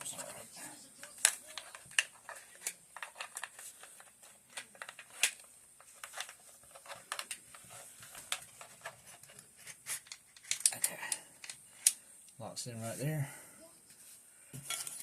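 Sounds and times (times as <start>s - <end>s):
small metal clicks and rattles: 6.0s - 12.0s.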